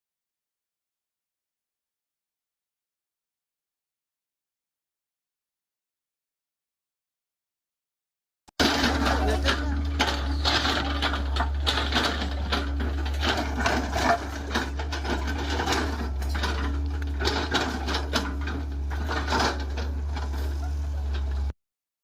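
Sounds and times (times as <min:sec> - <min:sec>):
mechanical clattering and clanking: 0:08.6 - 0:21.5
digging machine engine running: 0:08.6 - 0:21.6.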